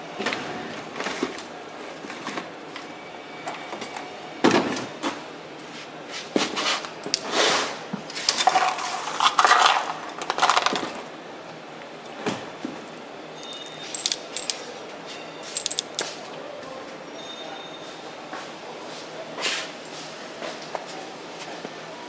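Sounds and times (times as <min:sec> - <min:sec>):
metal parts clinking and rattling: 0:08.3 - 0:11.0, 0:12.9 - 0:14.7, 0:15.4 - 0:16.1.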